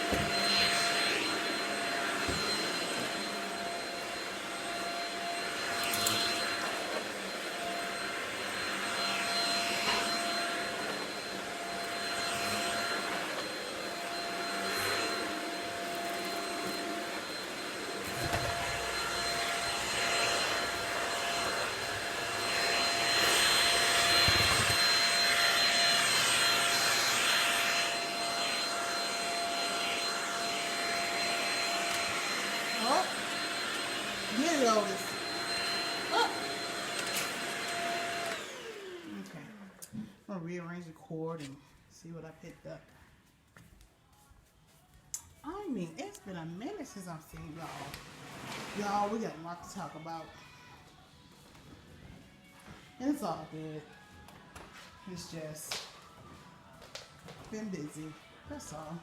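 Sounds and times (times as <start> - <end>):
vacuum cleaner motor whine: 0.0 - 41.6, 47.0 - 50.5.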